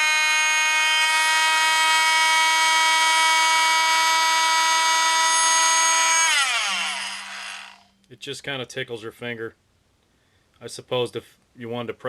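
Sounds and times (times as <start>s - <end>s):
multi-tool high-pitched whine: 0.0s - 8.0s.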